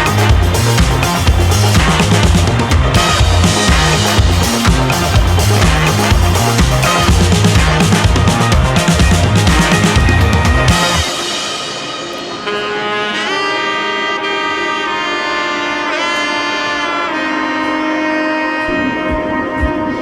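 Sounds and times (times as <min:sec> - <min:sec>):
saxophone-like horn melody: 0:00.0 - 0:20.0.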